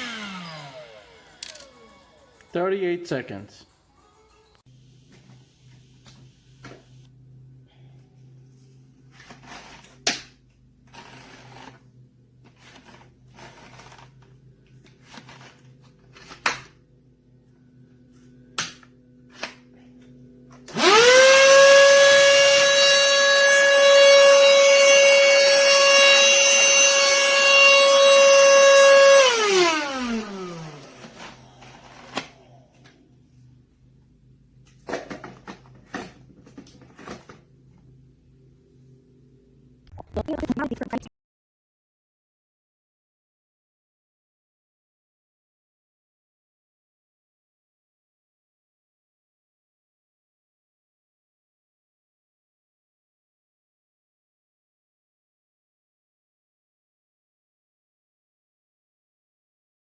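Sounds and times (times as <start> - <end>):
handheld vacuum motor whine: 0.0 - 2.6, 20.0 - 32.3.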